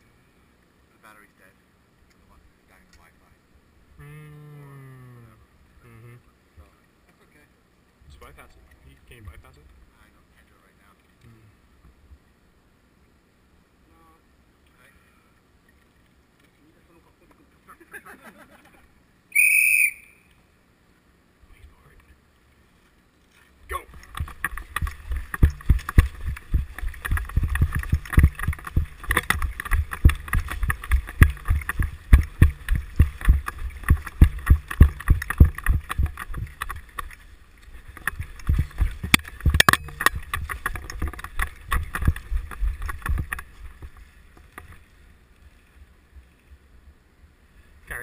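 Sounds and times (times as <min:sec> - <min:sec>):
running footsteps: 0:23.8 - 0:37.2, 0:37.8 - 0:44.7
camera and gear jostling: 0:23.9 - 0:37.2, 0:37.8 - 0:44.0
wind on microphone: 0:24.0 - 0:37.1, 0:37.8 - 0:44.0.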